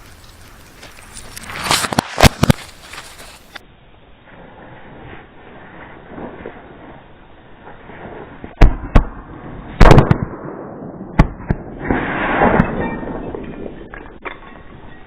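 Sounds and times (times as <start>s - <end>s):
firecracker crackling and hissing: 0.0s - 15.0s
firecracker bangs: 8.5s - 14.0s.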